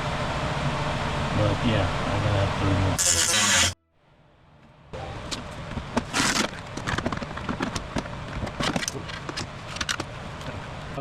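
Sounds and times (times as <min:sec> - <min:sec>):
drill bit chattering on metal: 0:03.0 - 0:03.8
electric drill motor: 0:03.0 - 0:03.8.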